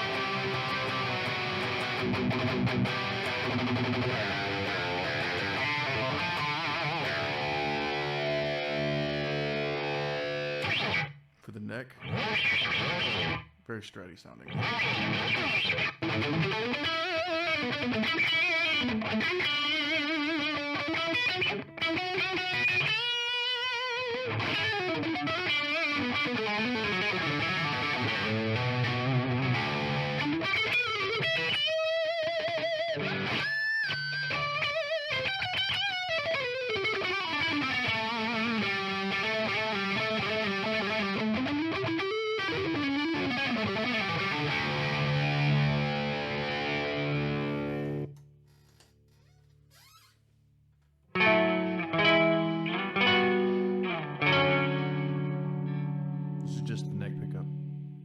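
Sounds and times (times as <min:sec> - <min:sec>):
electric guitar lead with vibrato: 0:00.0 - 0:11.2, 0:12.0 - 0:13.5, 0:14.5 - 0:48.2, 0:51.2 - 0:58.0.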